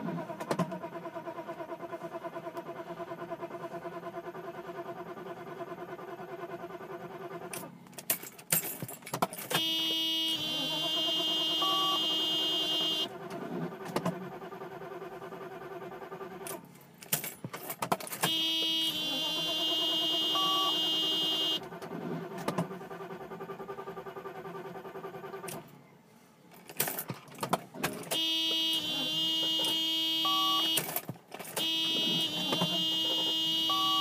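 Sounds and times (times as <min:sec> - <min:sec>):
car engine running: 0:09.6 - 0:25.4, 0:27.6 - 0:34.0.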